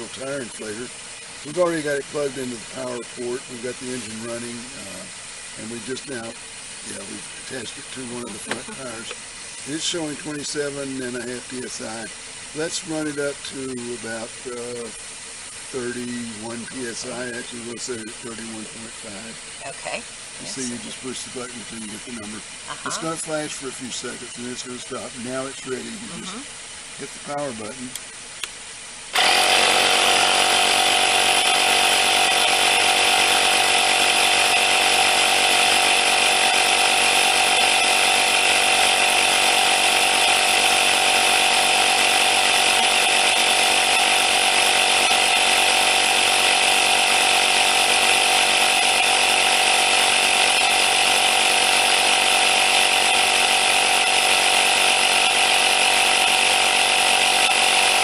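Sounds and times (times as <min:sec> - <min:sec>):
air compressor buzzing whine: 0:00.0 - 0:58.0.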